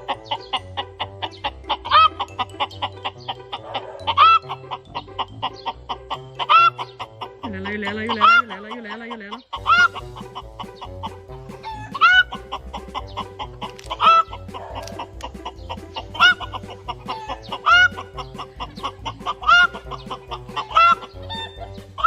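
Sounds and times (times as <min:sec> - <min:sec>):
chicken squawking: 0:00.0 - 0:22.0
music with pulsing bass: 0:09.6 - 0:22.0.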